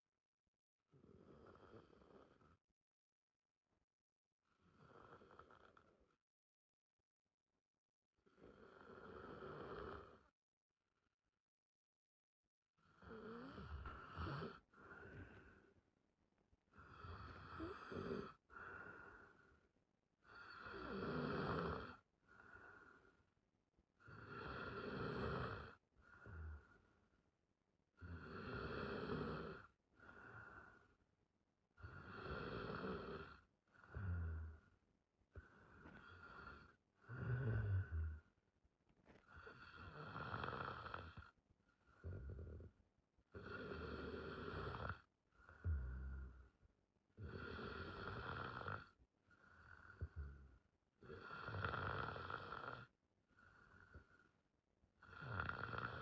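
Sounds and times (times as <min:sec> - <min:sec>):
woman snoring: 0:01.0 - 0:02.5, 0:04.6 - 0:05.9, 0:08.3 - 0:10.3, 0:12.8 - 0:15.6, 0:16.7 - 0:19.5, 0:20.2 - 0:23.0, 0:24.0 - 0:26.8, 0:28.0 - 0:30.8, 0:31.8 - 0:34.7, 0:35.4 - 0:38.3, 0:39.3 - 0:41.3, 0:41.9 - 0:42.7, 0:43.3 - 0:46.4, 0:47.2 - 0:52.9, 0:55.0 - 0:56.0.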